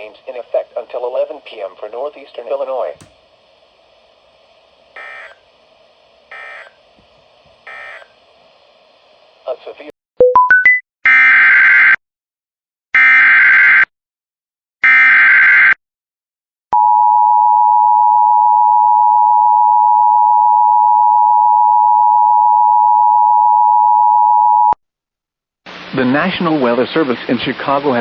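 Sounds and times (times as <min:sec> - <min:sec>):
long steady attention tone: 0:00.0 - 0:10.4
screechy digital data bursts: 0:05.0 - 0:05.4, 0:06.3 - 0:06.8, 0:07.7 - 0:08.1.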